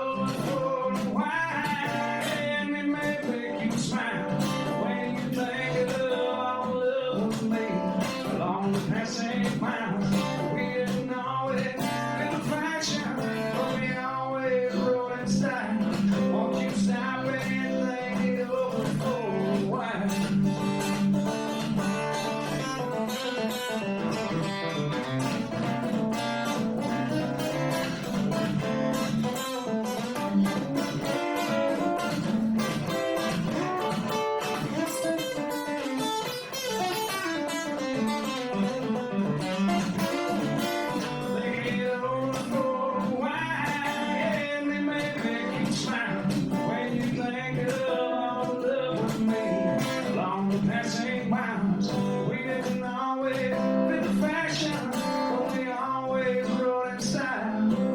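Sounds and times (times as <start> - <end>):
guitar playing blues-country: 0.0 - 57.9.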